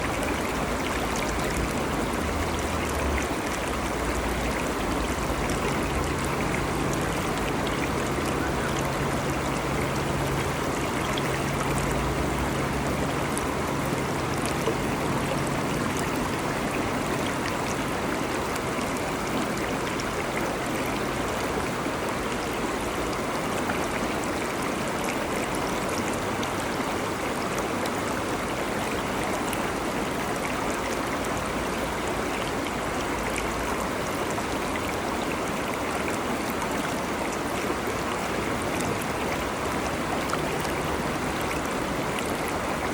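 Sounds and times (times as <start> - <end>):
stream water flowing: 0.0 - 42.9.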